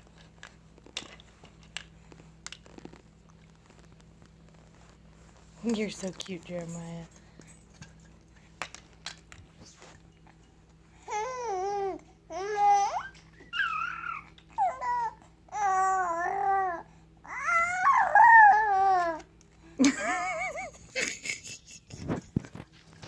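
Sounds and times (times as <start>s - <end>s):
baby babbling and cooing: 11.0s - 19.2s
baby squealing: 12.4s - 16.6s.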